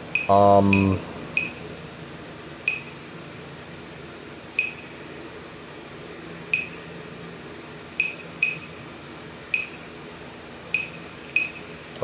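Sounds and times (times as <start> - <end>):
steady low hum: 0.0 - 12.0
phone keypad beeping: 2.7 - 2.9, 6.6 - 6.8, 10.8 - 11.6.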